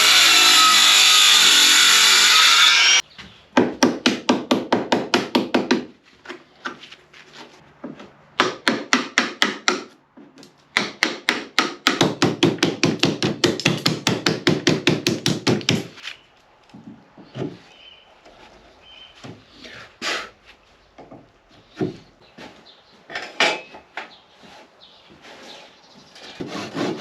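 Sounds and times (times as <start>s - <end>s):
hammer striking wood: 3.6s - 5.9s, 8.4s - 10.0s, 10.7s - 16.0s.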